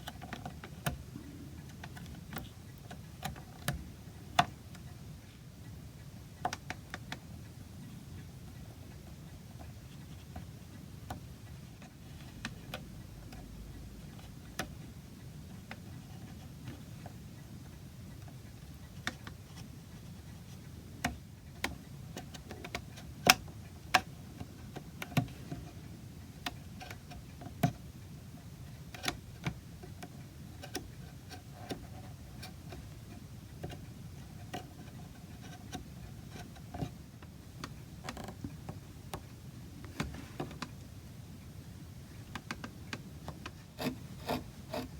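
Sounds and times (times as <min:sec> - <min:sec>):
low background hum: 0:00.0 - 0:44.9
carving tools cutting wood: 0:43.8 - 0:44.9.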